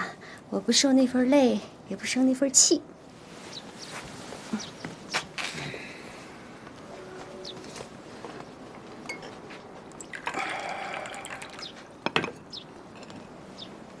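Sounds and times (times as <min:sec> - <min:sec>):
liquid pouring: 0:10.0 - 0:11.8.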